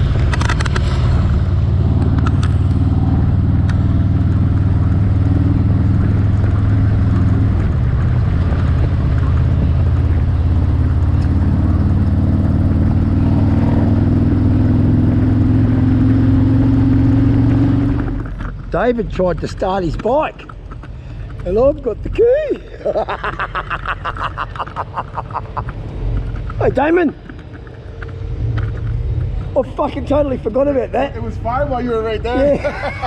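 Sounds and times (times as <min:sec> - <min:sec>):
motorcycle engine running: 0:00.0 - 0:22.1.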